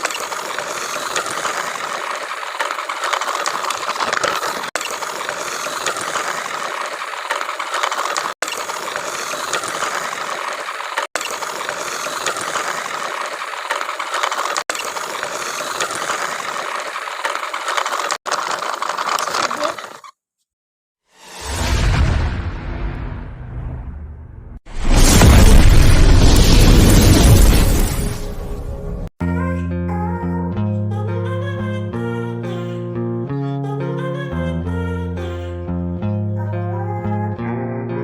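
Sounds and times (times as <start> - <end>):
toy motor whirring through gears: 11.6 - 20.1.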